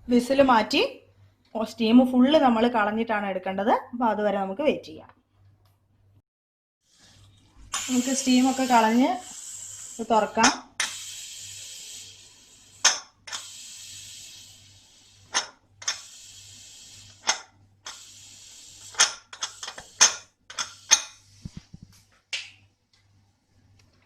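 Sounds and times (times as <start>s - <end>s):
pressure cooker steam hissing: 6.9s - 21.2s
pressure cooker sharp clicks: 10.4s - 11.0s.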